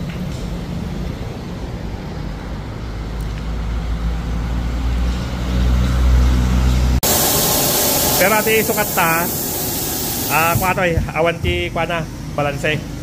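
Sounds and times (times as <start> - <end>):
vehicle engine rumbling: 2.7 - 12.4.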